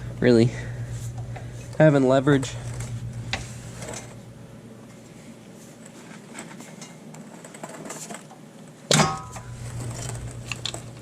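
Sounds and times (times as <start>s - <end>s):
loud metallic clunk with ring: 8.9s - 9.5s.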